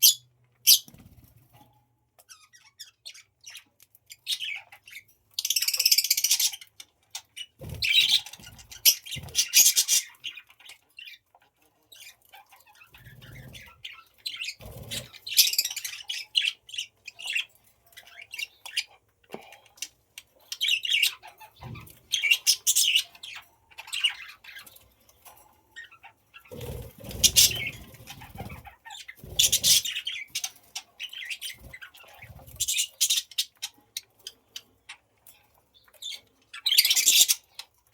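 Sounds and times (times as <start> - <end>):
budgies chirping: 0.0 - 1.6, 2.2 - 37.9
budgies fluttering wings: 0.7 - 1.6, 7.4 - 10.8, 11.9 - 18.8, 20.6 - 33.4.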